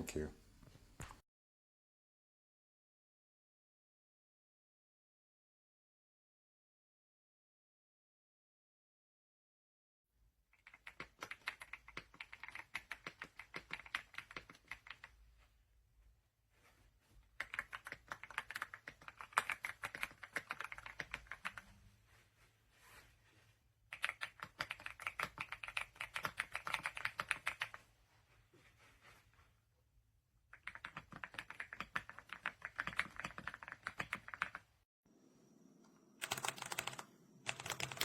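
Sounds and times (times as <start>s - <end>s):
mechanical keyboard typing: 10.6s - 15.1s, 17.4s - 21.6s, 23.9s - 27.8s, 30.6s - 34.7s, 36.2s - 38.0s.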